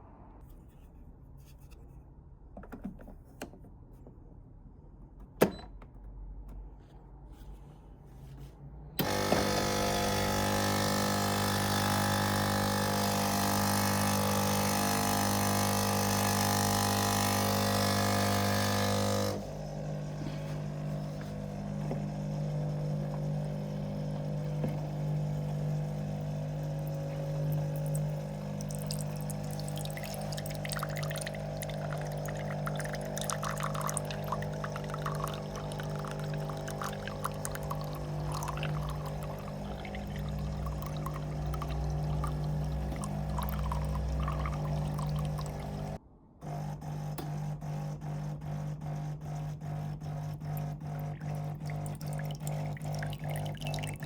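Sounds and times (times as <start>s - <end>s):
coffee machine mechanical hum: 8.4s - 54.0s
quieter machine hum: 9.0s - 46.7s
liquid trickling and splashing: 26.8s - 46.0s, 51.1s - 54.0s.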